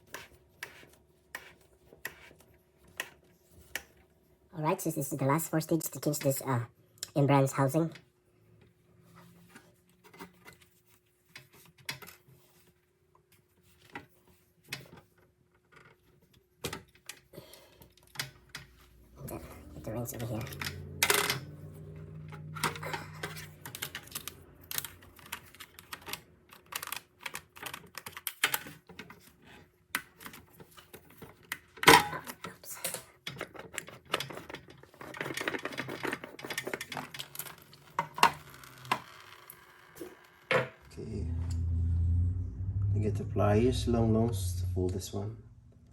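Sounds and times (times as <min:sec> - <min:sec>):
plastic filter parts clicking and knocking: 0:22.6 - 0:39.1
faint steady hum: 0:40.7 - 0:45.9.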